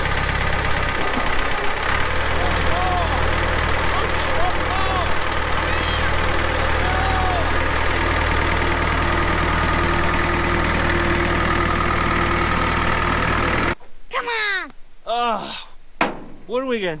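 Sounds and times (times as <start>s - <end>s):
tractor diesel engine idling: 0.0s - 13.8s.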